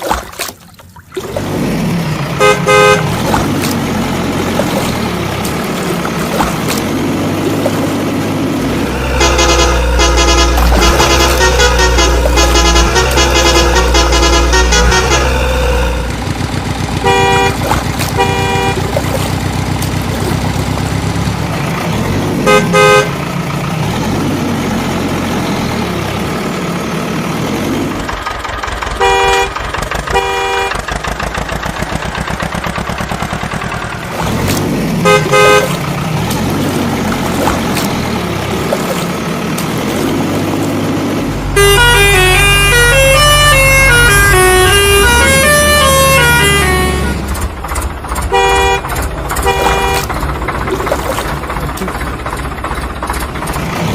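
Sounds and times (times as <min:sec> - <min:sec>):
truck engine revving: 0:00.0 - 0:53.9
short horn toots: 0:02.4 - 0:03.3, 0:08.7 - 0:16.2, 0:17.0 - 0:19.3, 0:41.6 - 0:47.4, 0:48.3 - 0:50.2.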